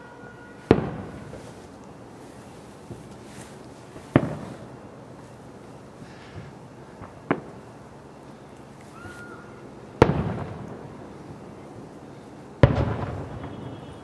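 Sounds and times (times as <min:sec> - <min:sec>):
fireworks booming: 0:00.6 - 0:01.7, 0:04.0 - 0:04.8, 0:06.0 - 0:07.7, 0:10.0 - 0:11.2, 0:12.6 - 0:14.0.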